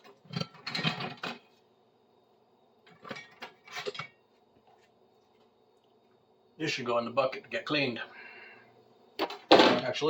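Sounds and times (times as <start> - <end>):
tools handled on a workbench: 2.9 - 4.1.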